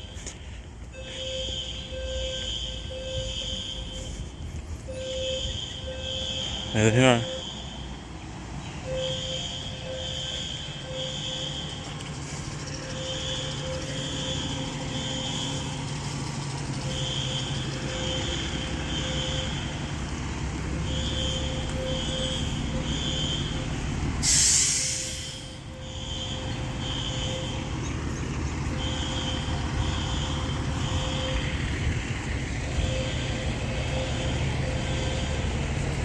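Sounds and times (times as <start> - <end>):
fire alarm beeping: 0.9 - 4.2, 4.9 - 8.0, 8.8 - 31.9, 32.6 - 35.7
heavy engine idling: 8.8 - 36.0
air brake hiss: 24.2 - 25.6.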